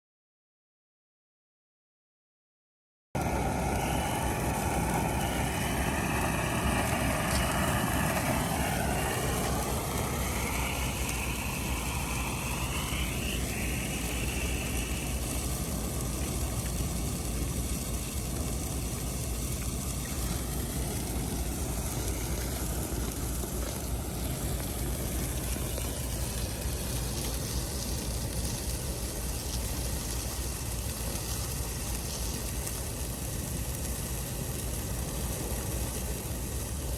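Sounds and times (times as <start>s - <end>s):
firework hissing: 3.2s - 36.9s
wavering high tone: 3.5s - 15.3s.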